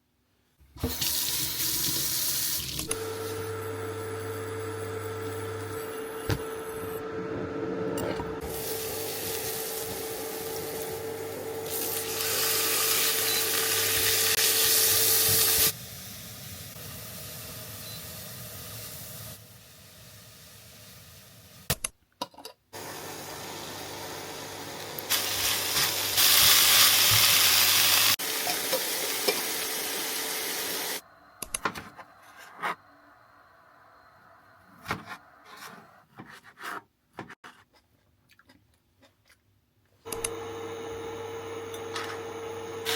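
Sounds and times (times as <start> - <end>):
food sizzling in a pan: 8.4 - 21.7, 22.8 - 31.0.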